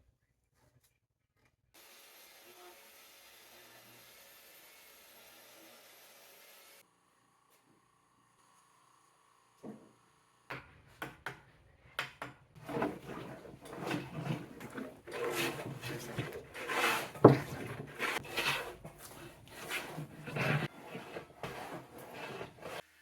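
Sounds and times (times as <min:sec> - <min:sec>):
wood scraping and rubbing: 0:12.6 - 0:22.8.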